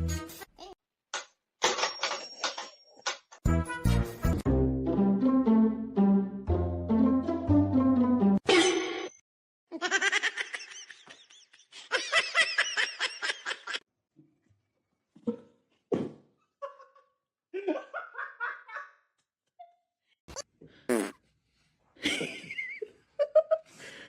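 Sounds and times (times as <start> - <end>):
person laughing: 9.7 - 13.8, 17.6 - 18.9, 22.0 - 23.6.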